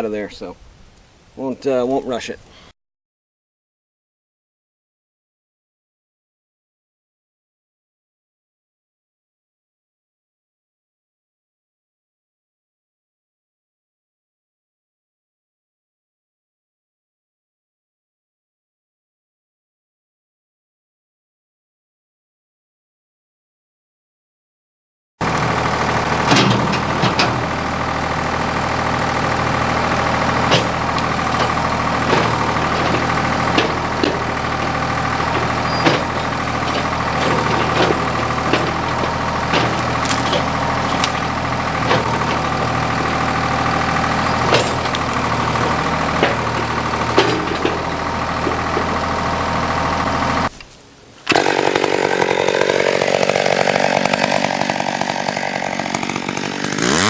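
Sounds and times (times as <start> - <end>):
engine revving: 25.2 - 50.5, 51.3 - 57.0
diesel engine running: 25.2 - 50.6, 51.3 - 57.0
sharp cracks and snaps: 39.7 - 40.4.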